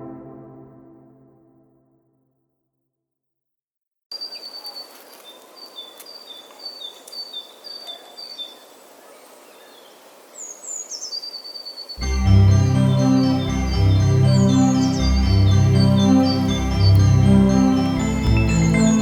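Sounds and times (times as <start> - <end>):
outdoor background noise: 4.1 - 12.1.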